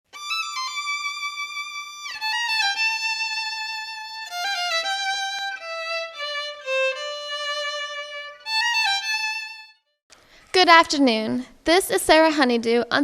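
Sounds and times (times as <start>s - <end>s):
solo violin melody: 0.1s - 9.9s.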